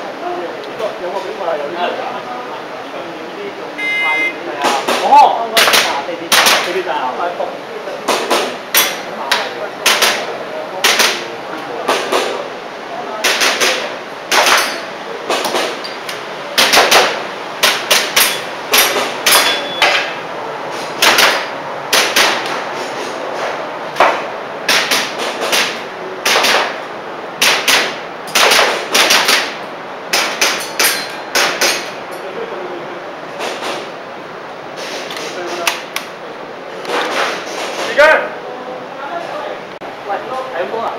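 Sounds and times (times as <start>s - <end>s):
airsoft pistol shots: 5.6s - 6.8s, 13.2s - 14.8s, 16.6s - 20.1s, 21.0s - 22.6s, 24.0s - 26.8s, 27.4s - 31.9s.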